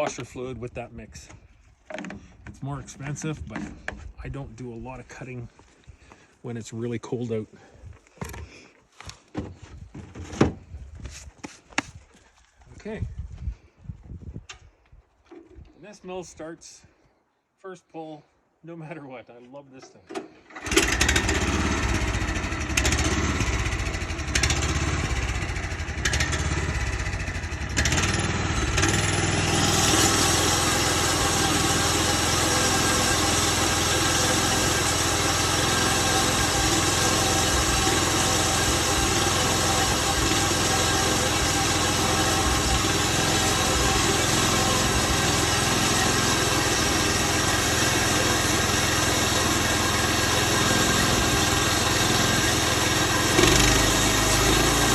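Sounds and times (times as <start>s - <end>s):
sawmill gas engine running: 20.5s - 54.9s.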